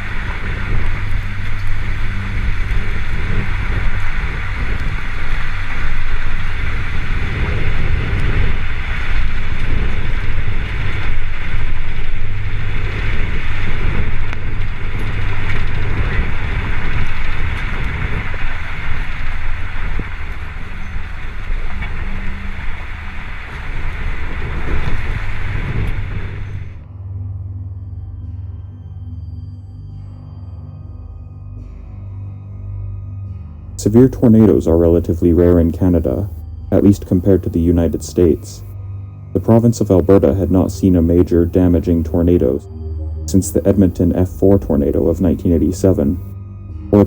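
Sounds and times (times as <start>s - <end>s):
strong wind buffeting microphone: 0.0s - 26.9s, 33.8s - 38.8s
steady low drone: 0.0s - 47.0s.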